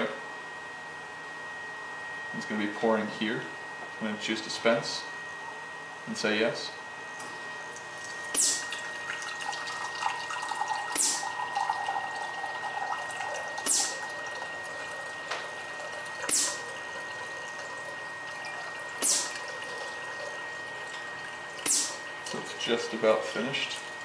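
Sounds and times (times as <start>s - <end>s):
drink dispenser pouring liquid: 7.7s - 24.0s
short sharp swish: 8.4s - 8.6s, 13.7s - 14.0s, 16.3s - 16.6s, 19.0s - 19.3s, 21.7s - 22.0s.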